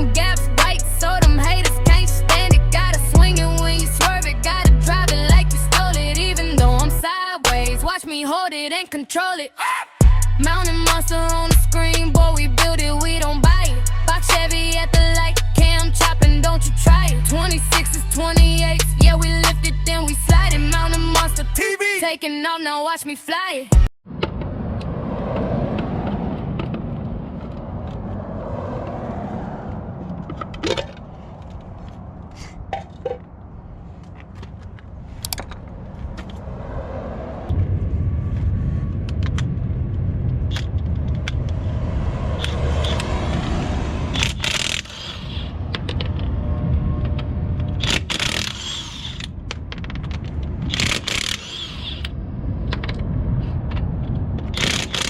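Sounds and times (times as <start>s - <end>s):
steady low rumble: 0.0s - 7.9s, 10.0s - 21.6s, 24.1s - 48.2s, 49.3s - 50.9s, 52.0s - 55.0s
loud rattling bursts: 44.1s - 45.3s, 47.8s - 49.3s, 50.6s - 52.0s, 54.5s - 55.0s.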